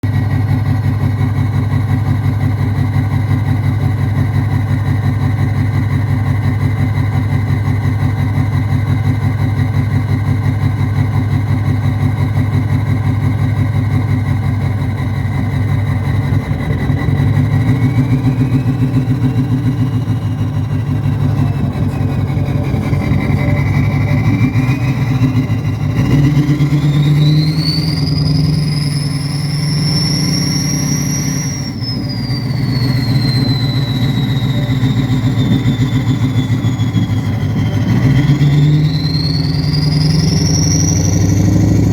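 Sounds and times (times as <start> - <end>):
diesel engine pulsing: 0.0 - 41.9
high whistle rising in pitch: 15.0 - 41.9.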